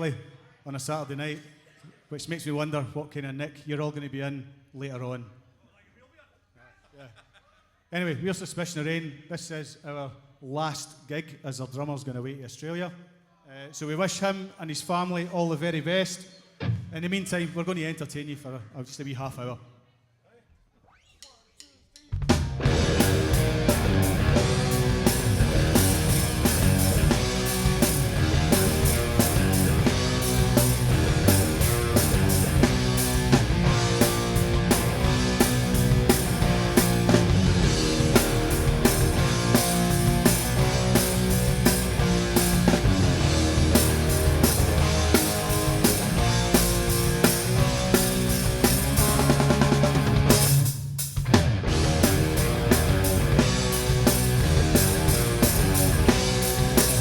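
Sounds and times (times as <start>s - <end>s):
rock band playing live: 22.3s - 57.0s
held bass note: 22.6s - 50.4s, 51.7s - 57.0s.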